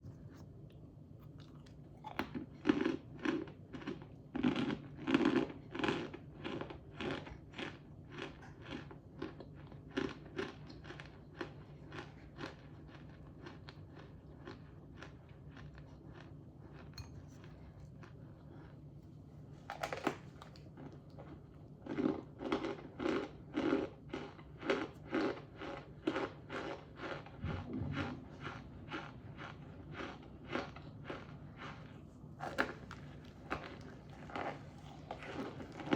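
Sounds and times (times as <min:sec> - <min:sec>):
crunchy chewing: 0:00.0 - 0:18.9, 0:19.8 - 0:35.9.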